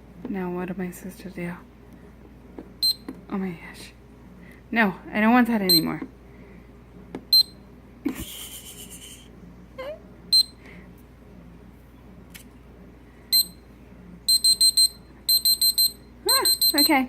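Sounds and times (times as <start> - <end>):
kitchen timer beeps: 5.7 - 5.9, 7.3 - 7.6, 10.3 - 10.6, 13.3 - 13.6, 14.3 - 17.0.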